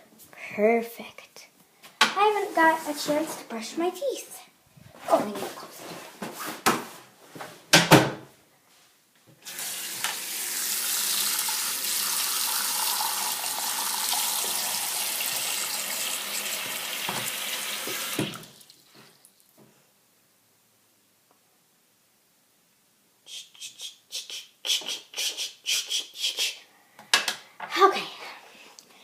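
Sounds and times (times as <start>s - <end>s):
water running into sink: 9.4s - 18.9s.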